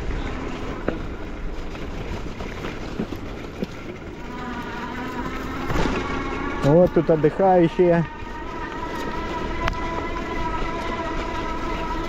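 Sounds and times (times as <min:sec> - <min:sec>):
bicycle tyres rolling on dirt: 0:00.0 - 0:12.0
steady buzzing hum: 0:03.5 - 0:12.0
bike knocking over bumps: 0:05.2 - 0:06.8.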